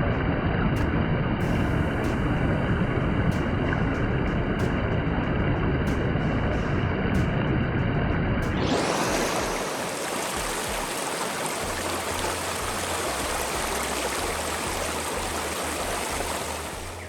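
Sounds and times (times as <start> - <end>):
faint low rumble: 0.0 - 17.0
river water rushing: 8.6 - 17.0.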